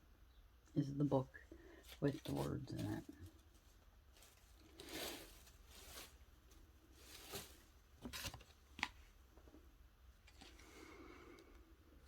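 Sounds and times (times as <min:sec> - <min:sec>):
paper rustling: 0:01.8 - 0:09.0.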